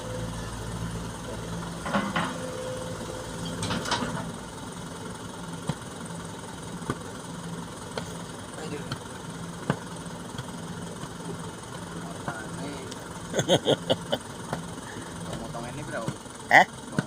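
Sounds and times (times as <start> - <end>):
diesel engine idling: 0.0 - 17.0.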